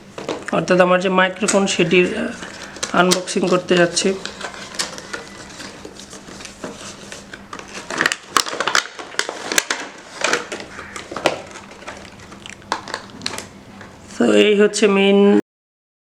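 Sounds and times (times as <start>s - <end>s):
packaging rustling and crinkling: 0.0s - 0.7s, 1.4s - 14.2s.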